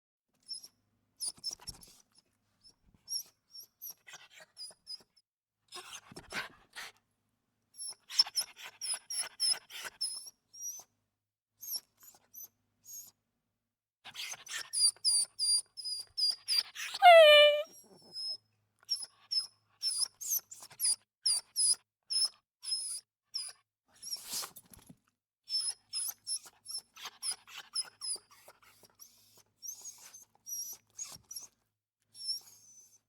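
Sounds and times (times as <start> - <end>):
small dog whimpering: 17.0 - 17.6.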